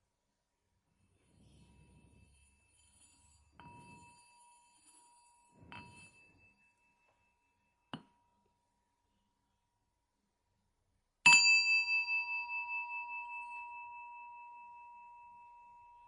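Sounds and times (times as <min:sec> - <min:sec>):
small metal bell ringing: 0:01.3 - 0:08.6, 0:11.3 - 0:16.0.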